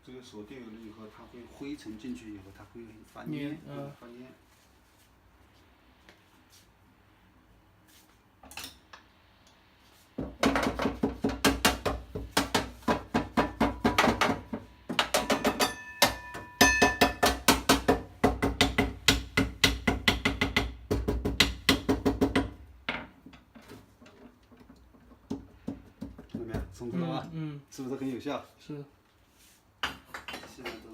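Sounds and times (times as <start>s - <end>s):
tapping on metal ring: 15.0s - 17.5s.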